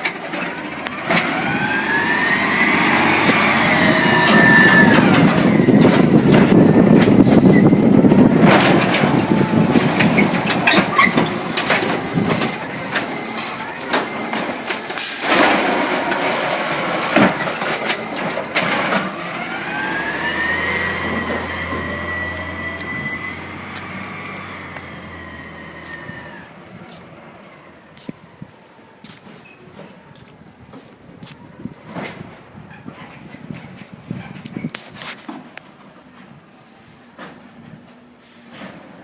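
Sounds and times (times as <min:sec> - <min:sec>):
garbage truck engine: 0:00.0 - 0:30.9, 0:35.3 - 0:39.0
high squeal: 0:00.1 - 0:26.6
sharp knocks and clatters: 0:08.0 - 0:13.1.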